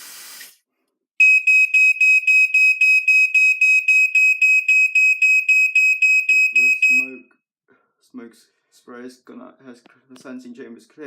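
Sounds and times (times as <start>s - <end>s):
smoke alarm beeping: 1.2s - 7.2s.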